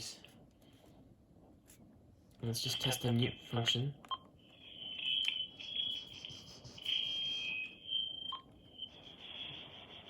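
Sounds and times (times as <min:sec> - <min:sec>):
high feedback whistle: 0:04.4 - 0:10.0.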